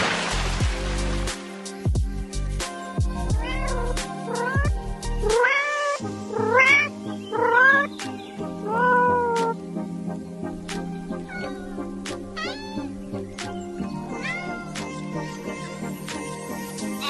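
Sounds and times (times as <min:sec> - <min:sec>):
background music: 0:00.0 - 0:17.0
cat meowing: 0:03.4 - 0:07.9, 0:08.6 - 0:09.6, 0:11.1 - 0:13.2, 0:13.9 - 0:15.4.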